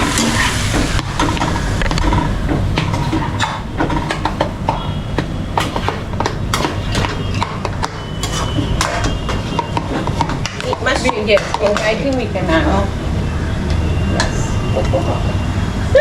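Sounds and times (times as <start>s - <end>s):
utensil scraping a pan: 0.0s - 5.0s, 5.6s - 12.5s.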